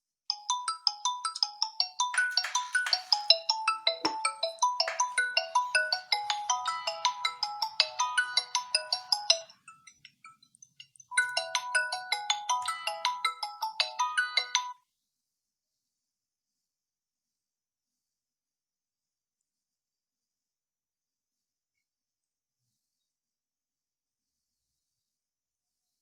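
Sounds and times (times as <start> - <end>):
phone ringtone melody: 0.4 - 10.0, 11.1 - 14.8.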